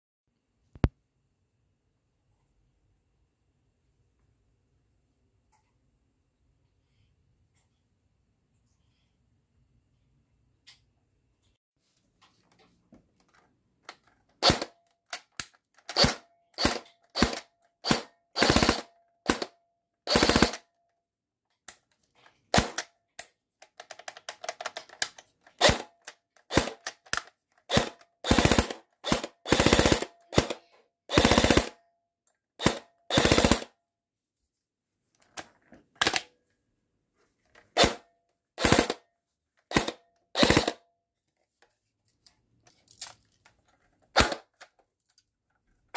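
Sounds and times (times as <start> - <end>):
airsoft gun gearbox cycling: 13.9 - 19.5, 20.1 - 20.7, 22.6 - 22.9, 23.6 - 31.8, 32.6 - 33.7, 38.6 - 39.0, 39.7 - 40.8, 44.2 - 44.8.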